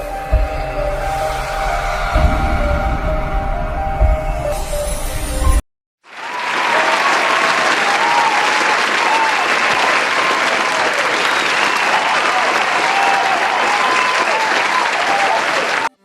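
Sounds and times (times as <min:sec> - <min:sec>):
crowd applauding: 0:06.0 - 0:16.0
crowd calls: 0:06.1 - 0:16.0.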